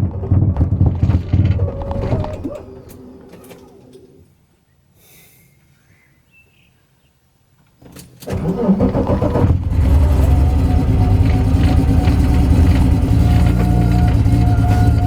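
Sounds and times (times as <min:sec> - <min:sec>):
car engine starting and idling: 0:08.0 - 0:15.0.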